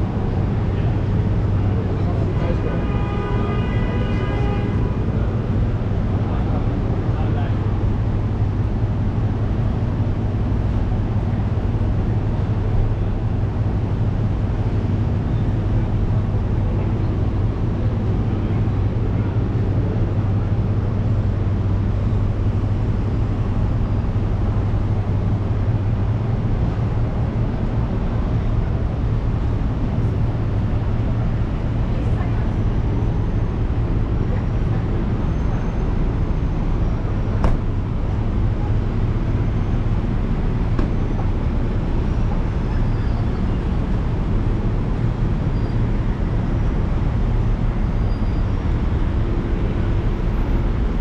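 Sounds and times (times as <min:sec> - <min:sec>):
low engine hum: 0:00.0 - 0:51.0.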